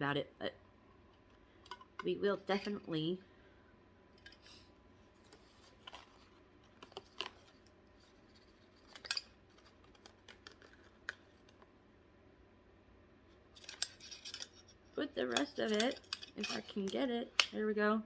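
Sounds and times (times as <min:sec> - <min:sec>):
small pieces and packaging clicking: 0:08.8 - 0:11.7.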